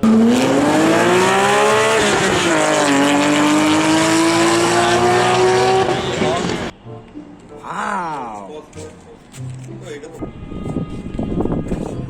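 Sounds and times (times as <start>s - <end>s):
racing car engine revving: 0.0s - 6.7s.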